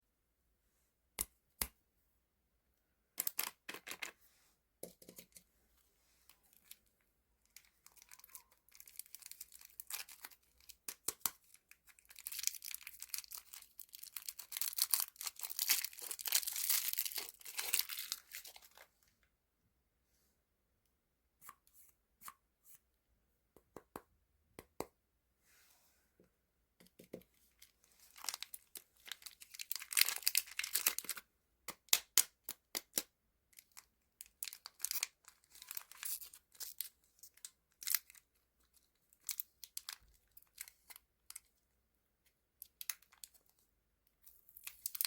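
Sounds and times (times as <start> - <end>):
plastic wrapper crinkling: 7.4 - 18.9, 27.5 - 31.2, 33.6 - 41.5, 44.6 - 45.0
plastic wrapper tearing: 7.6 - 18.8, 28.1 - 31.2, 33.6 - 38.2.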